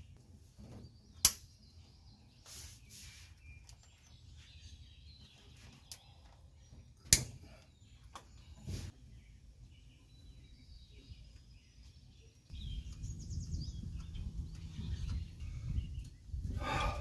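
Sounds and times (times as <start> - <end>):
birds chirping faintly: 0.0 - 17.0
scraping rustle: 2.4 - 3.6.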